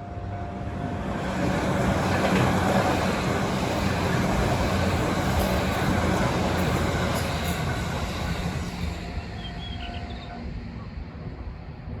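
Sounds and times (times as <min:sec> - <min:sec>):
electric train rumbling past: 0:00.0 - 0:12.0.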